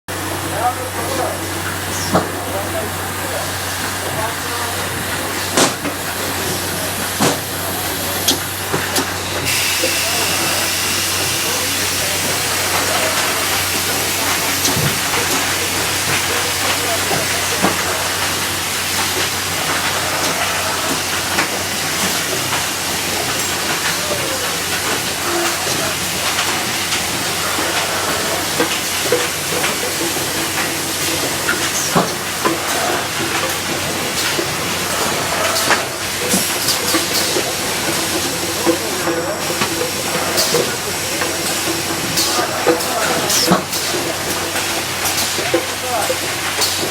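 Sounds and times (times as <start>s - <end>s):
capping machine hissing: 0.1s - 46.9s.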